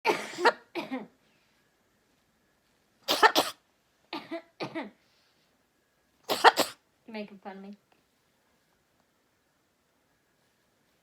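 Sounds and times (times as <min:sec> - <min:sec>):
parrot mimicking coughs: 0:03.1 - 0:03.6, 0:06.3 - 0:06.8.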